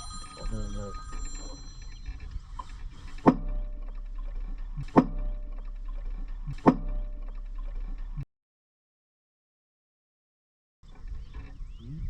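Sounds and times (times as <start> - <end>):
low hum: 0.0 - 8.2
sharp knocks: 3.1 - 7.9.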